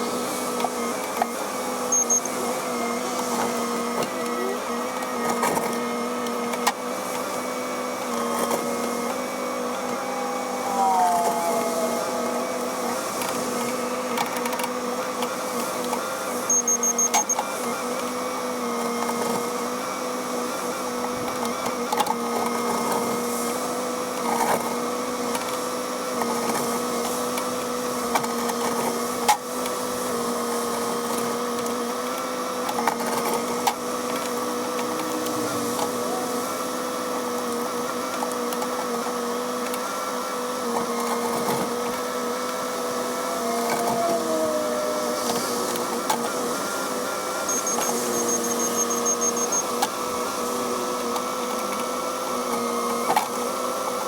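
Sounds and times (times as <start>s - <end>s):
excavator engine droning: 0.0s - 28.9s, 31.1s - 39.8s, 40.7s - 54.0s
quick high beeps: 1.9s - 2.3s, 16.5s - 17.4s, 47.5s - 49.7s.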